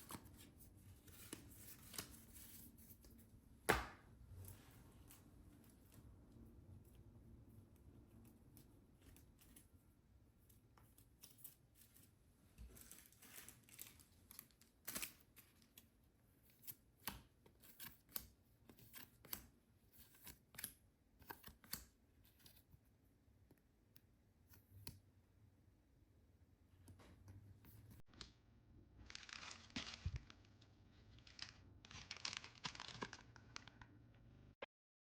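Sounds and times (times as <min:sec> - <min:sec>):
packaging rustle: 0:12.7 - 0:15.6, 0:29.0 - 0:33.9.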